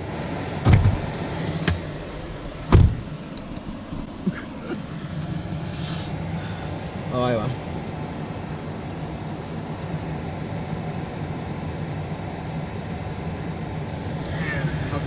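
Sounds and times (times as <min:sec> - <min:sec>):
engine idling: 0:00.0 - 0:15.0
heater fan: 0:00.0 - 0:15.0
windshield wipers straining: 0:00.3 - 0:04.3
heavy thumps: 0:00.6 - 0:03.2.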